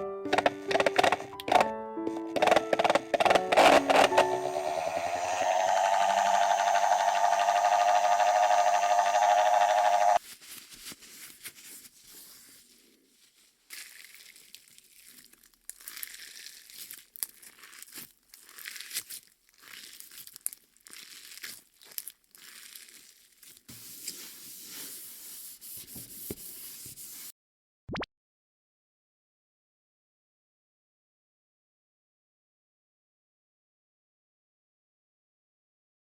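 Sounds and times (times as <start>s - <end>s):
slime squished by hand: 13.7s - 23.7s.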